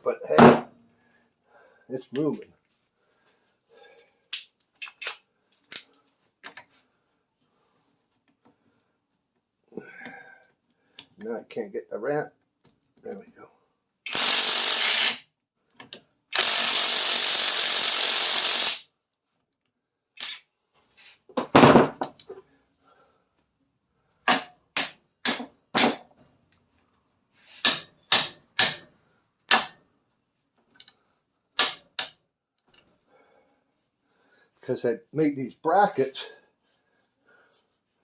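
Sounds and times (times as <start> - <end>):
power tool running: 14.1 - 15.2, 16.4 - 18.8.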